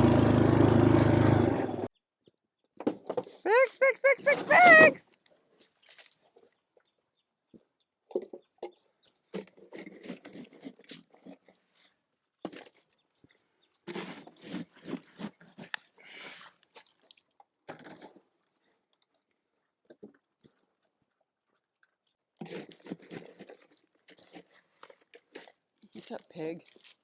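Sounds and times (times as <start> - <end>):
hogs chewing feed: 20.2 - 27.0.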